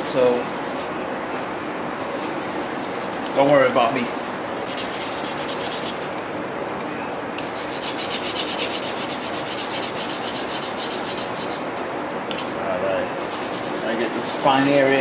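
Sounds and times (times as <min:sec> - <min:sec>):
sandpaper rubbing on steel: 0:00.3 - 0:00.9, 0:02.0 - 0:06.0, 0:07.4 - 0:11.6, 0:13.3 - 0:15.0.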